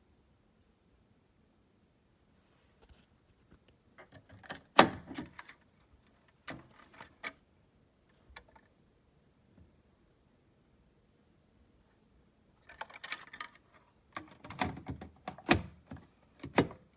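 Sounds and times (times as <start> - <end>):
handling clicks and knocks: 14.2 - 16.9.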